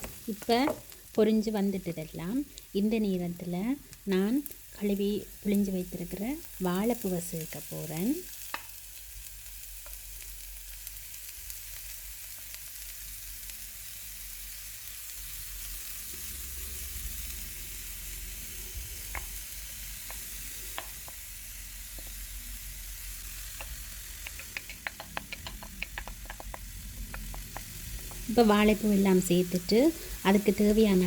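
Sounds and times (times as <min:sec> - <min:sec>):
oil sizzling in frying pan: 0:00.0 - 0:31.0
spoon clicking and scraping pan: 0:23.5 - 0:28.3.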